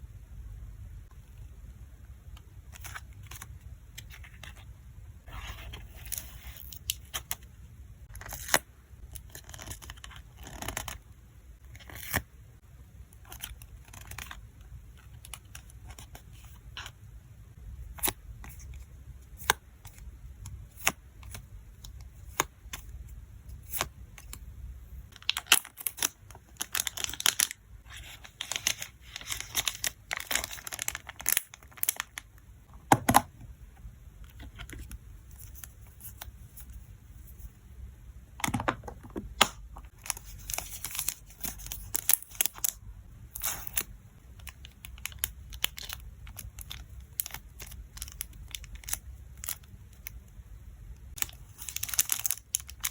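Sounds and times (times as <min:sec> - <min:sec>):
packaging crinkling and rustling: 0:25.1 - 0:32.2, 0:39.9 - 0:42.8, 0:43.4 - 0:50.1, 0:51.2 - 0:52.9.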